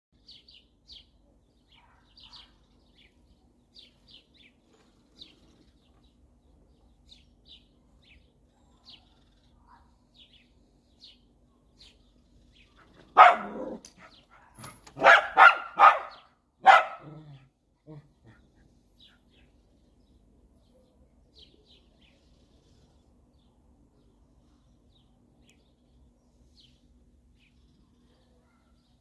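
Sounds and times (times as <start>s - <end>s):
small bird chirping: 0.2s - 17.3s, 18.6s - 29.0s
dog barking: 1.8s - 2.6s, 13.1s - 17.4s.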